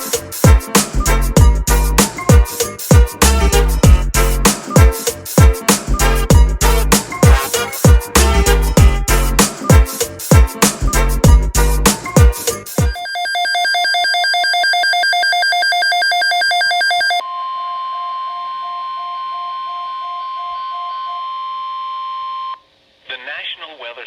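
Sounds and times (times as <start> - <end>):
steady high alert tone: 12.7 - 22.0.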